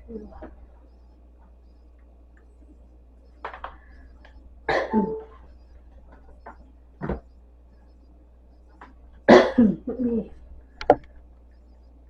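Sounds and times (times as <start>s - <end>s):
person coughing: 4.7s - 5.3s, 9.3s - 10.3s.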